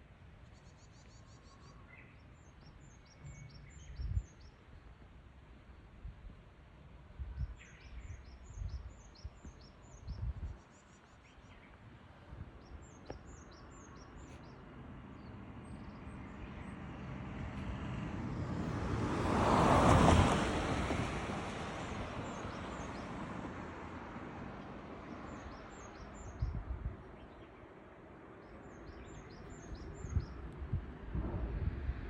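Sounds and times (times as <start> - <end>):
wind rumble on microphone: 3.1 - 4.5, 5.8 - 10.6, 25.3 - 27.4, 28.8 - 32.0
broad rushing noise: 30.6 - 32.0.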